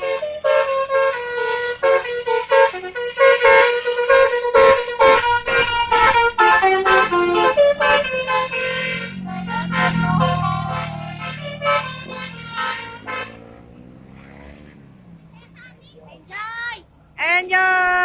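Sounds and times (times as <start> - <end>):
bus musical horn tune: 0.0 - 14.1.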